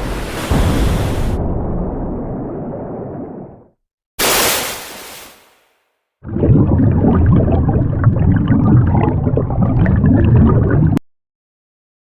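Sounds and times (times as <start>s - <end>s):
water gurgling and bubbling: 6.2s - 11.0s.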